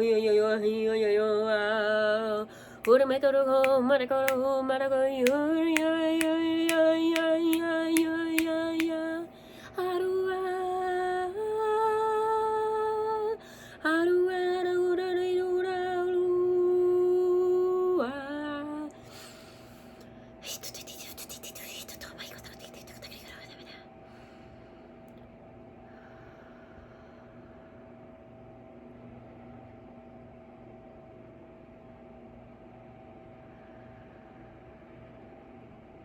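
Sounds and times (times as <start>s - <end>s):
woman humming and singing notes: 0.0s - 14.3s.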